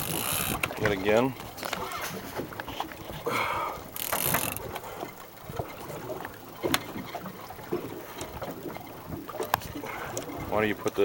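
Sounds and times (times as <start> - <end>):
fishing reel clicking: 0.0 - 0.7, 3.9 - 4.7.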